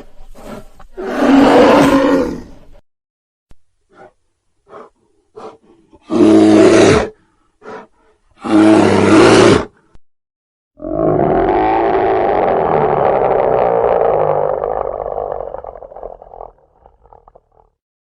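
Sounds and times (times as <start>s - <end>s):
bear roaring: 1.0s - 2.6s, 3.9s - 9.8s, 10.8s - 17.7s
bear huffing: 3.9s - 6.2s, 7.1s - 8.5s.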